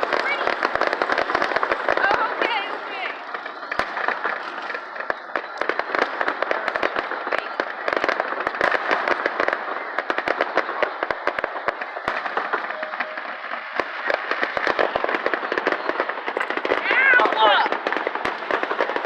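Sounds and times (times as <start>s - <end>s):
firework bangs: 0.0s - 19.0s
firework crackling: 0.0s - 19.0s.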